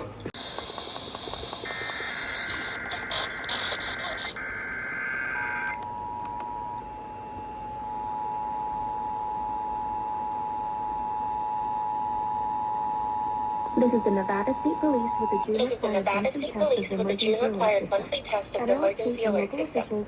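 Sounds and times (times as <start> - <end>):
screeching digital header bursts: 1.1 - 5.8
dual-tone attention signal: 11.8 - 15.8.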